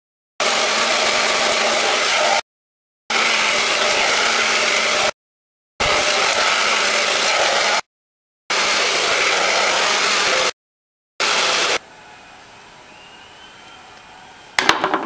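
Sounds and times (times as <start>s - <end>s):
blow dryer running: 0.4s - 2.4s, 3.1s - 5.2s, 5.8s - 7.9s, 8.5s - 10.6s, 11.2s - 14.7s.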